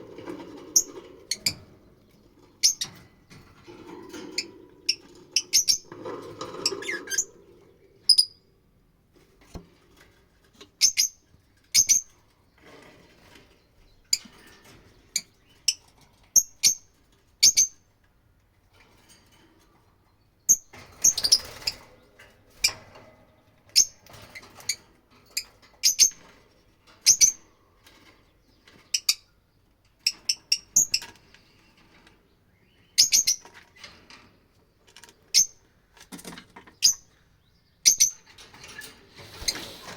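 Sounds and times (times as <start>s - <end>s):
lovebirds chirping: 4.2s - 8.6s
faint rustle: 38.3s - 39.9s.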